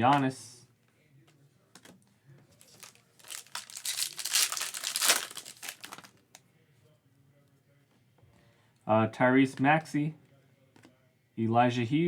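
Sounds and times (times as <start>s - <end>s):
foil wrapper crinkling and tearing: 2.6s - 6.3s.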